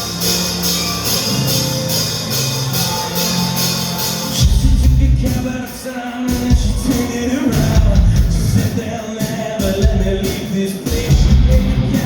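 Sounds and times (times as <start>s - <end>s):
drums with cymbal strokes: 0.0s - 12.0s
electric guitars: 0.0s - 12.0s
bass and kick drum: 4.4s - 5.5s, 6.3s - 8.8s, 11.0s - 12.0s.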